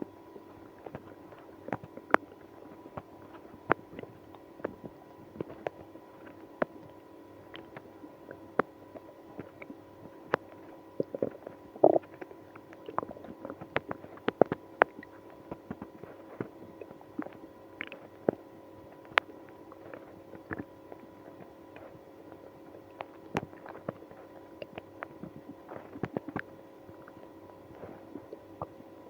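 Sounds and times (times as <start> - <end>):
stomach gurgling: 0.0 - 29.0.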